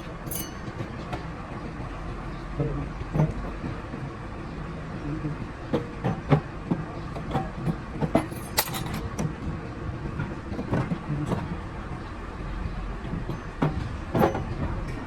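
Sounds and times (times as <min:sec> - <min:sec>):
short rattle: 0:00.0 - 0:00.8, 0:08.2 - 0:09.1
metal clinks and knocks: 0:00.0 - 0:01.0, 0:08.2 - 0:09.1.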